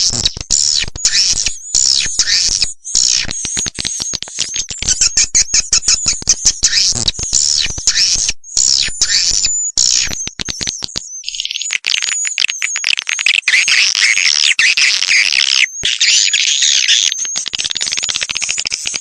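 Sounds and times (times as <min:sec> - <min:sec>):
bird chirps and twitters: 0:00.0 - 0:19.0
fast clicking: 0:17.2 - 0:19.0.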